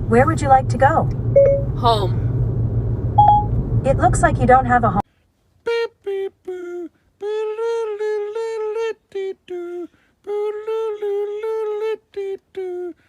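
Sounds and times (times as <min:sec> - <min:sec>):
high voice humming a melody: 0:05.6 - 0:13.0.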